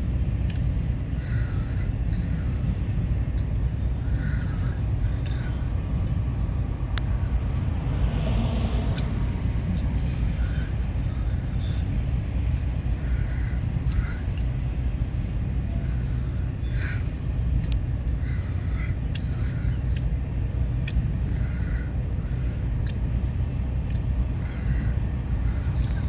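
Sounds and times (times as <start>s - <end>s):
freight train rumbling past: 0.0s - 18.8s.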